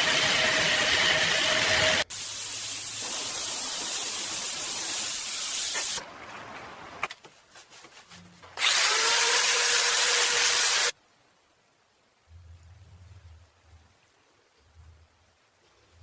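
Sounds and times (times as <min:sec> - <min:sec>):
power tool running: 0:00.0 - 0:02.0, 0:08.6 - 0:10.9.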